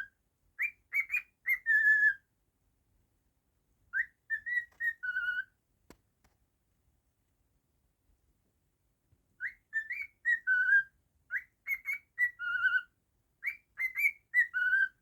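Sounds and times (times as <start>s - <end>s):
cockatiel whistling a tune: 0.6s - 2.2s, 3.9s - 5.5s, 9.4s - 15.0s.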